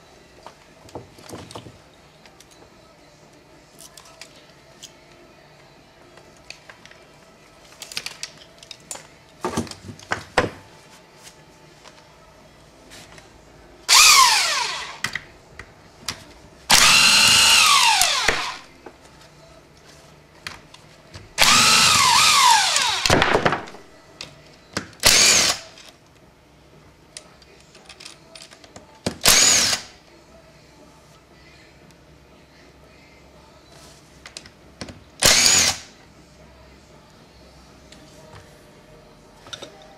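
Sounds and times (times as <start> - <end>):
power drill spinning: 13.9 - 15.0, 16.7 - 18.7, 21.4 - 23.1, 25.0 - 25.7, 29.2 - 29.9, 35.2 - 35.8.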